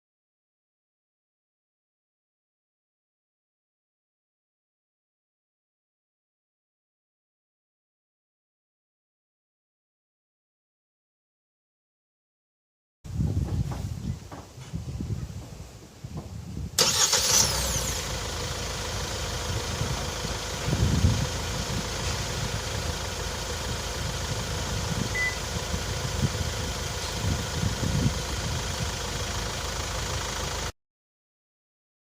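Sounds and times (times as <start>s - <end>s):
car engine starting and idling: 16.8s - 30.7s.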